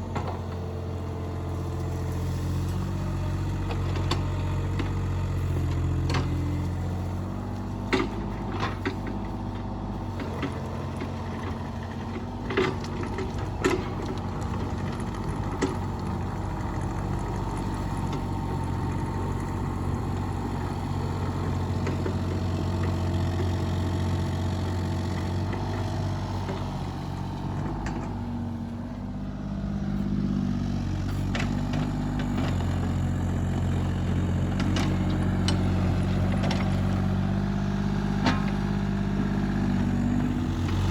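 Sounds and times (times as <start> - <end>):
excavator diesel engine running: 0.0 - 40.9.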